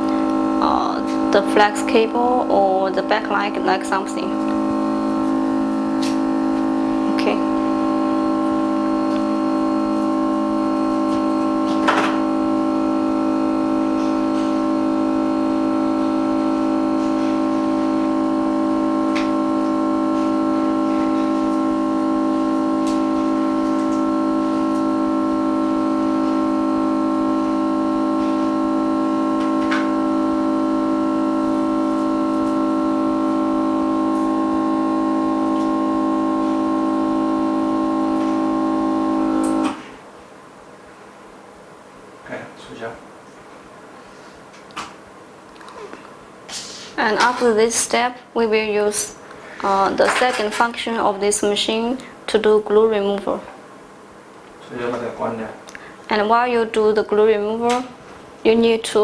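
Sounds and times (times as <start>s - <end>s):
sustained keyboard chord: 0.0s - 40.0s.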